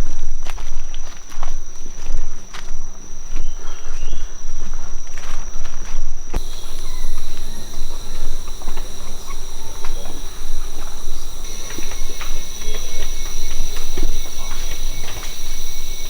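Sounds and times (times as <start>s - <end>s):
insects droning: 0.0s - 16.0s
walking and handling noise: 0.0s - 16.0s
higher insect drone: 6.4s - 16.0s.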